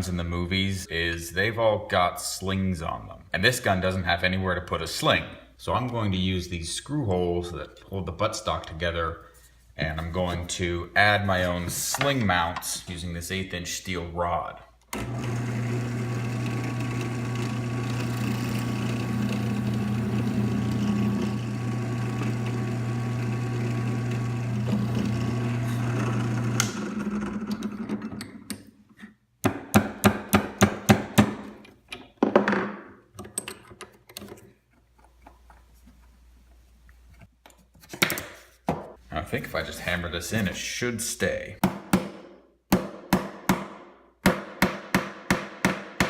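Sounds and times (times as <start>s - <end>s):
power tool motor running: 15.0s - 27.2s
sharp knocks like hammer taps: 41.6s - 46.0s.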